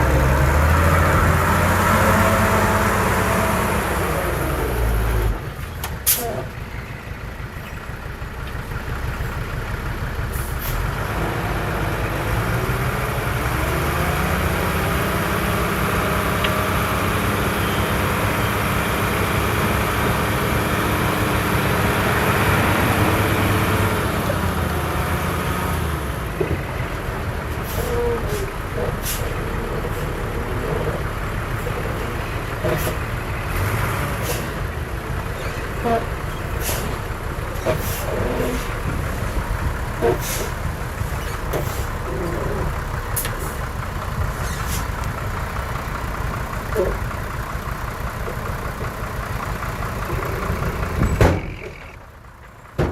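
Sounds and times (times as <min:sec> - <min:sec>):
heavy diesel engine under load: 0:00.0 - 0:52.9.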